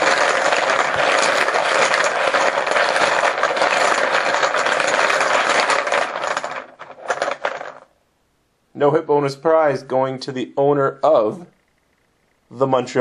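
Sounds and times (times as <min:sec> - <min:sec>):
poker chips clattering: 0:00.0 - 0:07.9.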